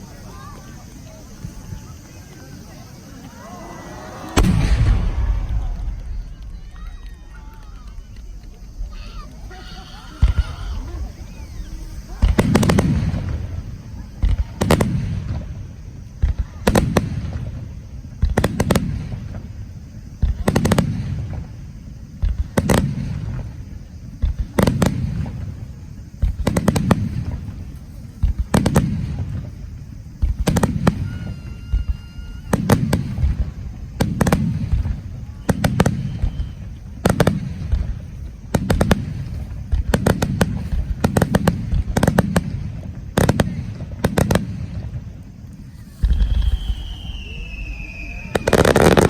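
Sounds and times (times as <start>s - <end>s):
fireworks bangs: 0.0s - 49.0s
low rolling boom echoing: 2.7s - 16.2s, 44.9s - 49.0s
brief high whistle: 31.0s - 32.6s, 35.9s - 36.6s, 45.8s - 48.8s.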